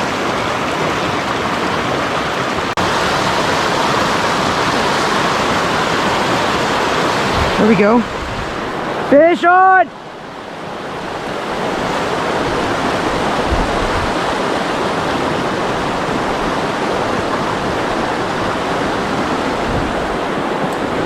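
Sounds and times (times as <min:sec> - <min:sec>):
creek water rushing: 0:00.0 - 0:21.0.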